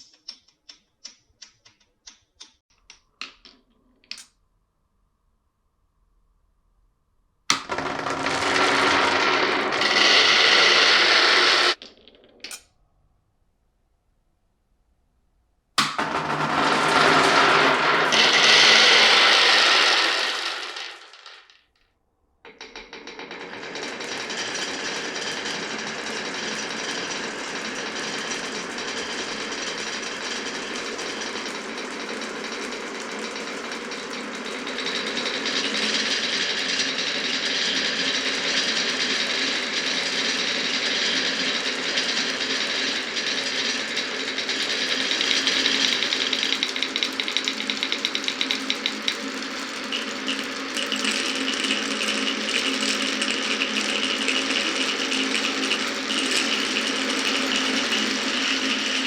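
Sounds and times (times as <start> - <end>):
marbles rattling on wooden run: 7.5 - 12.2, 15.8 - 21.6, 22.5 - 59.0.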